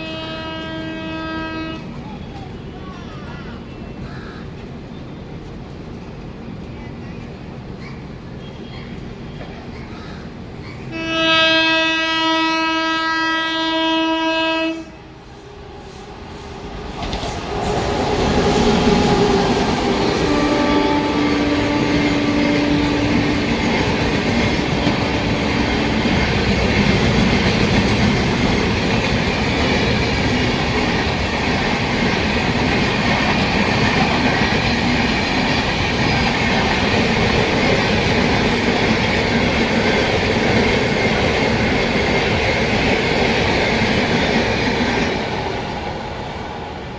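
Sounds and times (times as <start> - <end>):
train horn blast: 0.0 - 2.0, 10.9 - 16.1, 17.6 - 26.6
train wheels rolling on rails: 0.0 - 9.9, 15.0 - 46.9.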